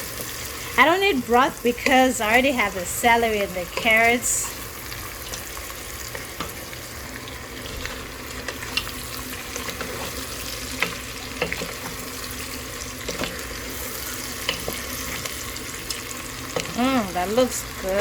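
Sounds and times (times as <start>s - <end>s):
food sizzling in a pot: 0.0s - 18.0s.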